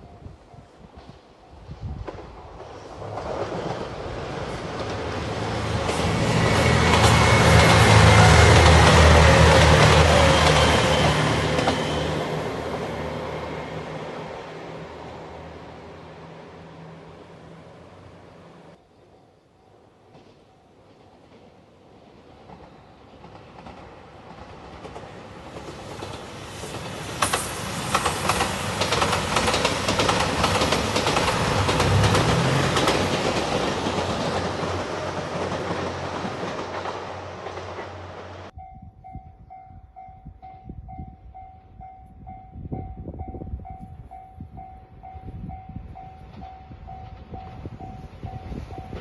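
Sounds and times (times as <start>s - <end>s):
train passing over crossing: 0.0s - 49.0s
level crossing warning bell: 38.6s - 49.0s.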